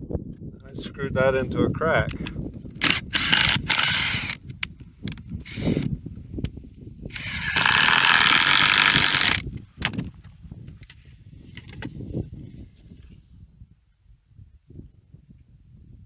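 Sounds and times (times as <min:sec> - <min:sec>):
mechanical ratcheting: 0:02.8 - 0:06.0, 0:07.1 - 0:10.1.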